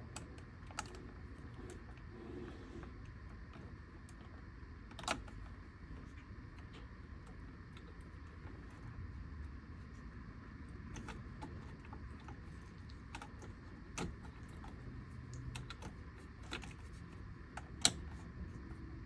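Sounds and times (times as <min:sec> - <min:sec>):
low steady hum: 0:00.0 - 0:19.0
light clicks and taps: 0:10.9 - 0:18.8.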